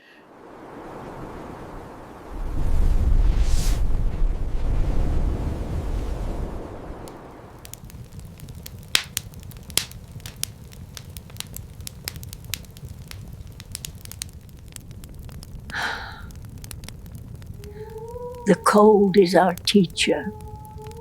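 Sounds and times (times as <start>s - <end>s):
low rumble: 2.1s - 21.0s
wood fire crackling: 5.0s - 21.0s.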